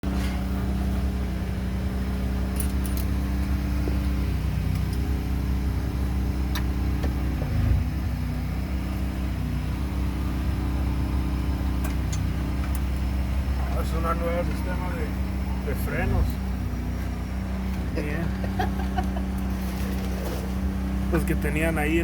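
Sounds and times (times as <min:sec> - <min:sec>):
truck diesel engine idling: 0:00.0 - 0:22.0.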